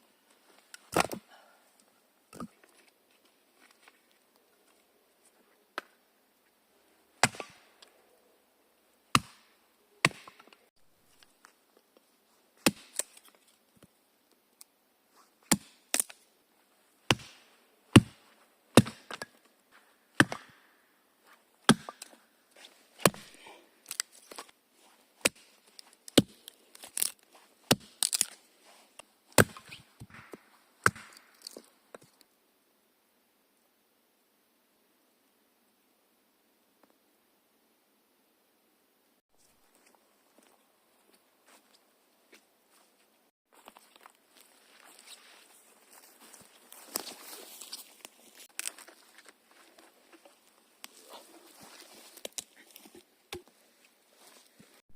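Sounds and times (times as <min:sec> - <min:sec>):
axe chopping wood: 0:00.9 - 0:01.2, 0:07.2 - 0:07.7, 0:09.1 - 0:10.6, 0:12.6 - 0:13.1, 0:15.5 - 0:16.2, 0:17.1 - 0:19.4, 0:20.2 - 0:20.6, 0:21.7 - 0:22.2, 0:23.0 - 0:24.1, 0:25.2 - 0:25.5, 0:26.1 - 0:28.3, 0:29.4 - 0:31.6.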